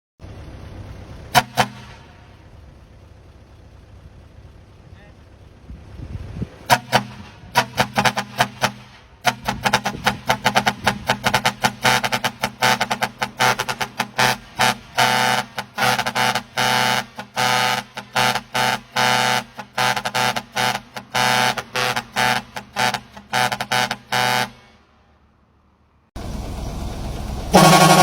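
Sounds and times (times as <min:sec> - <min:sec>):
low rumbling noise: 0:00.2 - 0:07.8
air horn blasts: 0:01.3 - 0:02.5, 0:06.6 - 0:24.9, 0:27.5 - 0:28.0.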